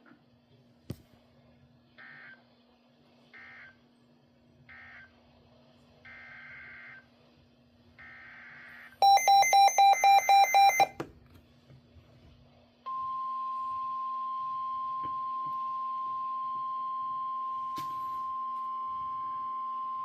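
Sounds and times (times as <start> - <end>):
steady warning alarm tone: 4.7 - 5.1, 6.1 - 7.1, 8.0 - 11.0
rapid alarm beeps: 8.0 - 10.9.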